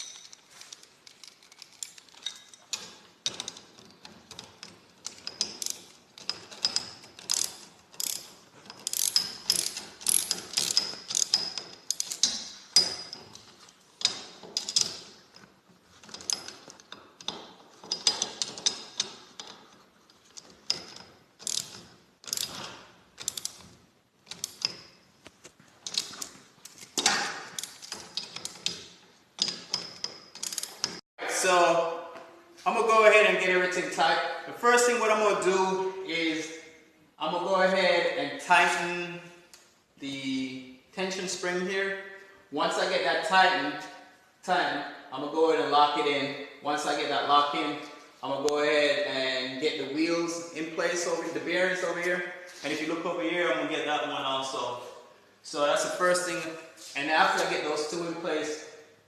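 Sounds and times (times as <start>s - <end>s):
ratchet wrench clicking: 2.7s - 13.4s, 20.3s - 23.7s, 29.4s - 31.0s.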